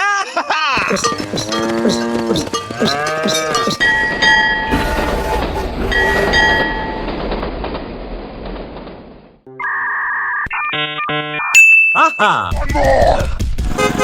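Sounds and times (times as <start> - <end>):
train rumbling: 0.8 - 9.4.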